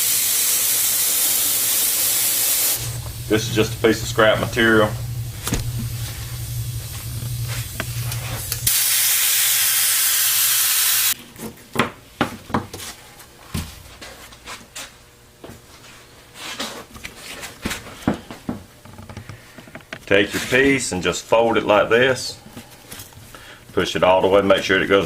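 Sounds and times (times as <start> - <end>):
spray adhesive gun hissing: 0.0 - 11.2
low steady hum: 2.8 - 8.7.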